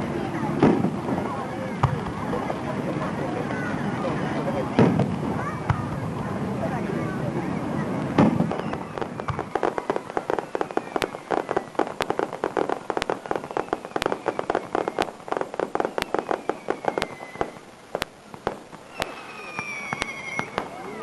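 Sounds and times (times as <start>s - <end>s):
fireworks crackling and popping: 0.0s - 21.0s
whistles of falling firework shells: 8.2s - 21.0s.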